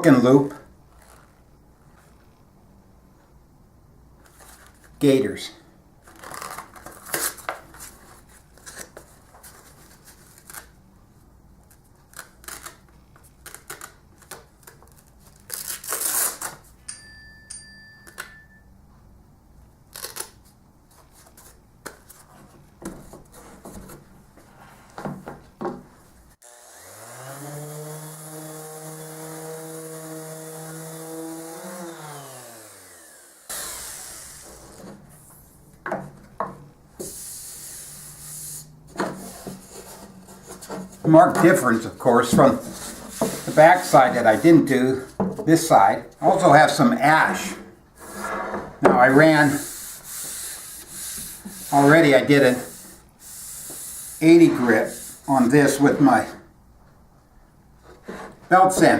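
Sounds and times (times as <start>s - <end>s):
orbital sander motor hum: 26.4s - 34.8s.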